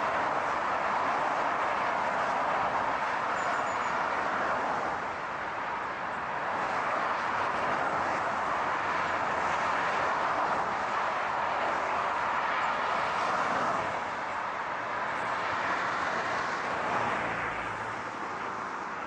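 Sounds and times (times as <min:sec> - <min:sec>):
car road noise: 0:00.0 - 0:19.0.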